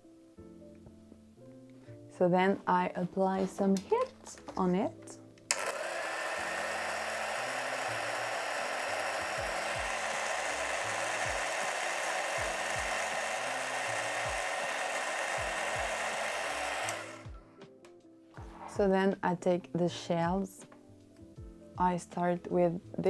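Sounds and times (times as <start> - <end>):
heat gun blowing hot air: 5.5 - 17.3.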